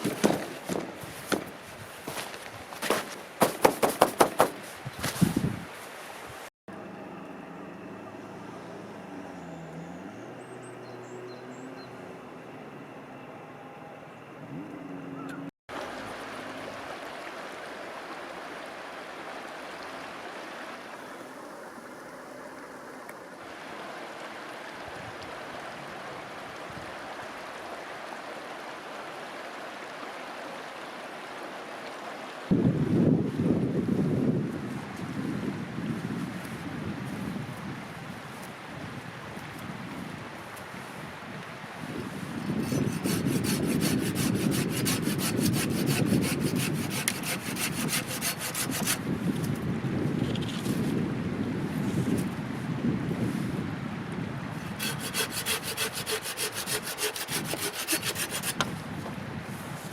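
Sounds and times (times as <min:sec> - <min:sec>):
hand saw cutting wood: 0:00.0 - 0:01.5, 0:02.8 - 0:04.7, 0:42.6 - 0:49.1, 0:54.7 - 0:58.7
running water rushing: 0:00.0 - 0:06.5, 0:15.7 - 0:32.7, 0:37.9 - 0:49.3, 0:54.6 - 0:59.9.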